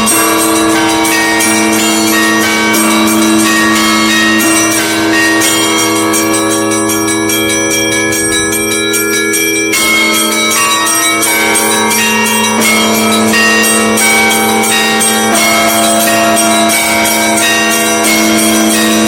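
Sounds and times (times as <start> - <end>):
hum of large bells: 0.0 - 19.0
small bells striking quickly: 0.0 - 19.0.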